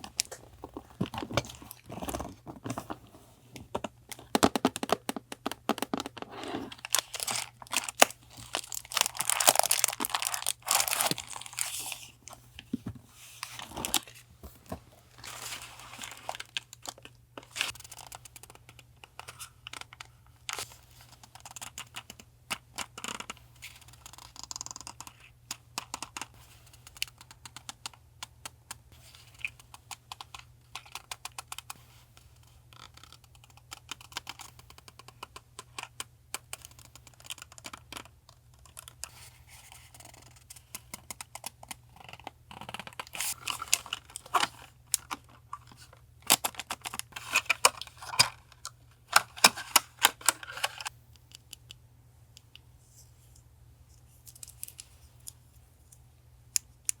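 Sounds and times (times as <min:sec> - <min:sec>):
packaging crinkling: 0:06.7 - 0:12.0.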